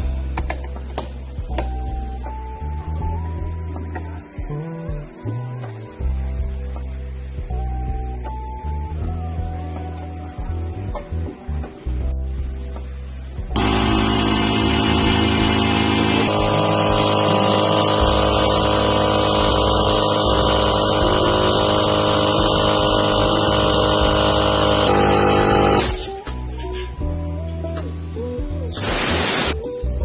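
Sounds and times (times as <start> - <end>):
air compressor running: 13.6 - 26.2, 28.7 - 29.6.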